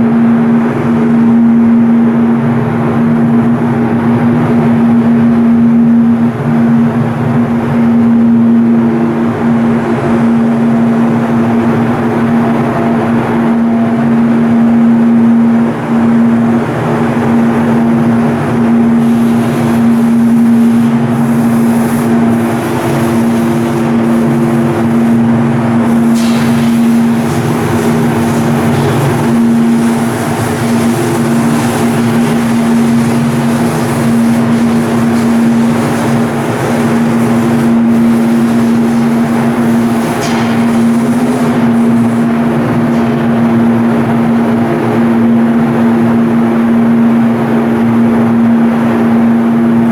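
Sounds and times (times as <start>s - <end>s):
ship diesel engine drone: 0.0s - 49.9s.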